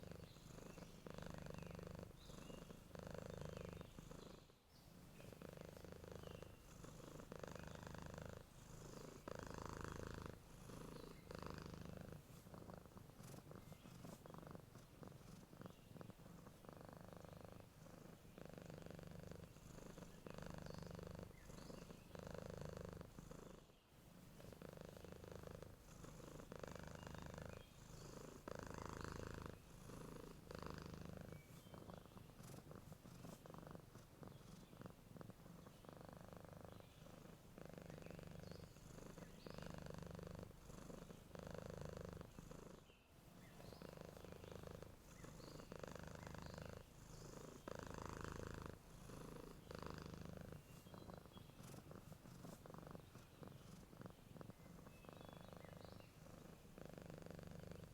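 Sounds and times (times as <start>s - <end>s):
cat purring: 0.0s - 57.9s.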